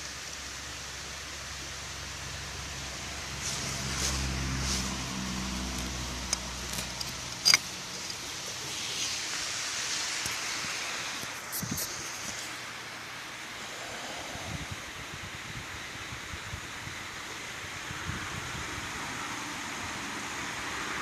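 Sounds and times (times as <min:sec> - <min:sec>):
low engine-like hum: 0:00.0 - 0:09.2
steady outdoor hiss: 0:00.0 - 0:21.0.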